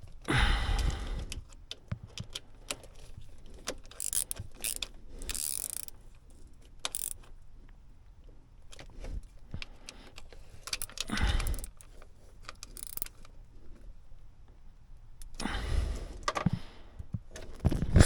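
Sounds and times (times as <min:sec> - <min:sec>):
metal tools clinking: 0:12.5 - 0:13.2.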